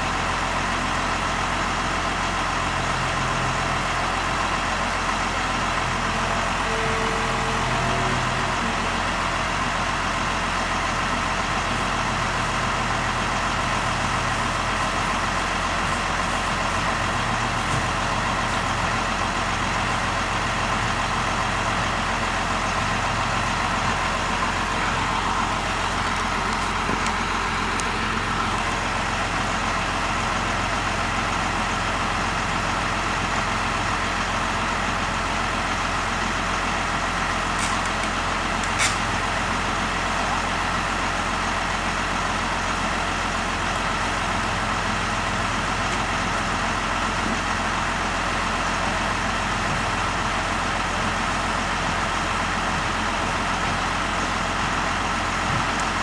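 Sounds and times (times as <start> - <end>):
engine running steadily: 0.0 - 56.0.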